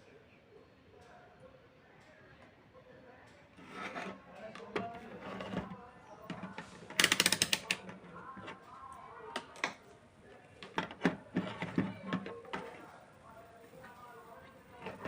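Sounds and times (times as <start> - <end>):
rattling run of sharp clicks: 3.8 - 8.1.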